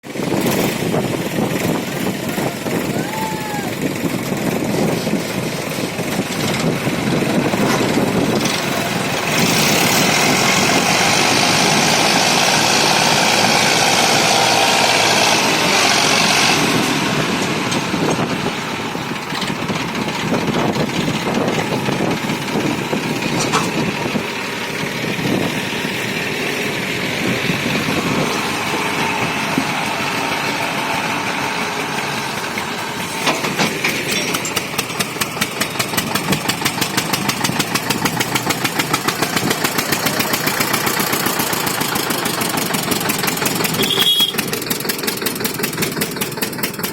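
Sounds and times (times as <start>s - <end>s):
diesel tractor engine running: 0.0s - 46.9s.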